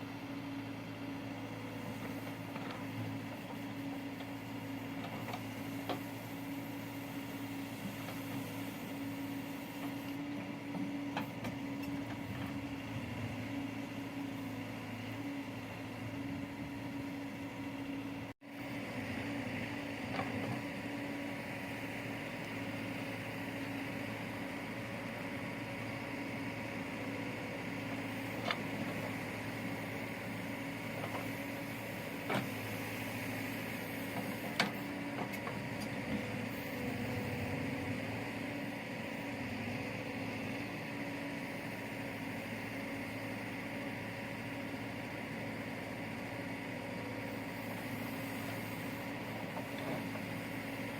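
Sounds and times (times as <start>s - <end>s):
diesel engine running: 11.0s - 50.9s.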